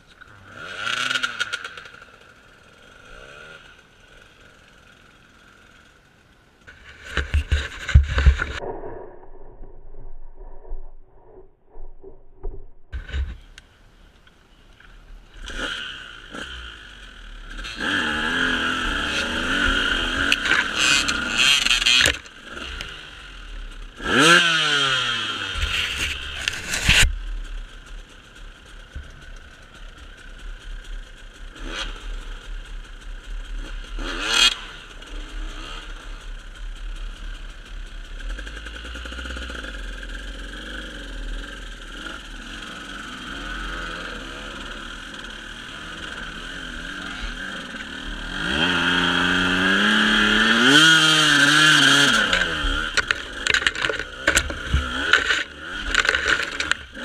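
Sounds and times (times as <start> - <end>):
motorcycle engine revving: 0.3 - 9.5, 15.3 - 57.0.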